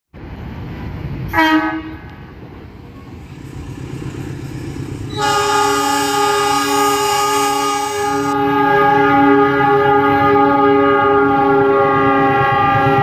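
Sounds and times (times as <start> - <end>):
low rumble of train: 0.1 - 13.0
train horn: 1.3 - 2.3, 5.1 - 13.0.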